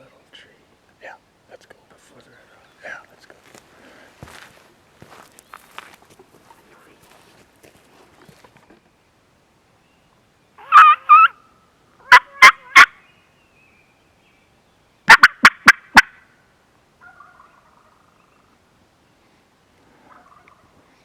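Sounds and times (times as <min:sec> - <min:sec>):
turkey call hen yelps: 0:10.6 - 0:11.4, 0:12.0 - 0:13.0, 0:15.1 - 0:16.3, 0:17.0 - 0:18.2, 0:20.1 - 0:20.6.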